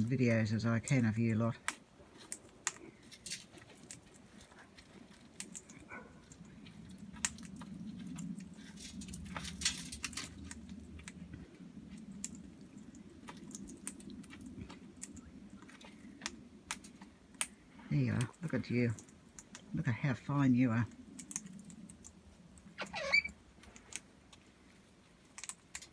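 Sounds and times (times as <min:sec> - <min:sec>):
parrot cracking seed clicks: 0:05.2 - 0:11.2, 0:12.2 - 0:17.6, 0:20.8 - 0:22.7, 0:23.6 - 0:24.4, 0:25.3 - 0:25.9.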